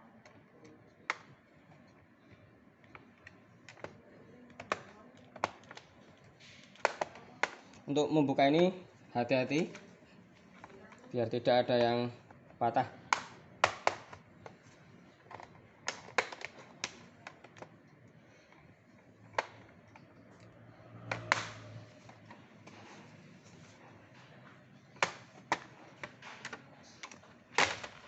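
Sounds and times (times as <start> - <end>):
plastic clips clicking loose: 15.3 - 17.7, 19.4 - 20.0, 25.0 - 28.0.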